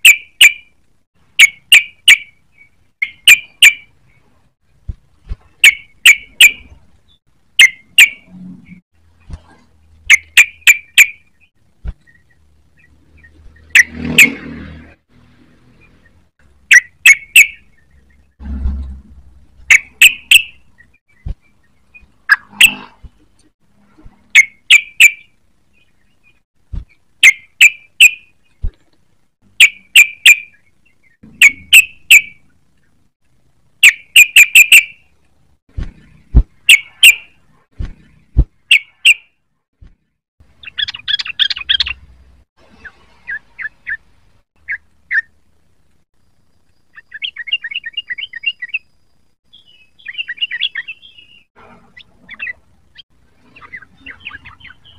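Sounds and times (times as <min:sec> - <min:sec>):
bird chattering trill: 0:00.0 - 0:00.7, 0:01.4 - 0:03.9, 0:05.6 - 0:06.7, 0:07.6 - 0:08.3, 0:16.7 - 0:18.0, 0:19.7 - 0:20.6, 0:31.3 - 0:32.5, 0:33.8 - 0:35.0, 0:40.6 - 0:42.0, 0:52.0 - 0:54.9
bulbul calls: 0:00.0 - 0:00.7, 0:01.4 - 0:04.2, 0:05.6 - 0:06.8, 0:07.6 - 0:08.8, 0:10.0 - 0:14.4, 0:16.7 - 0:18.2, 0:19.7 - 0:22.9, 0:24.4 - 0:28.6, 0:29.6 - 0:32.5, 0:33.8 - 0:35.1, 0:40.6 - 0:42.0, 0:44.6 - 0:45.3, 0:46.9 - 0:48.9, 0:49.5 - 0:54.9.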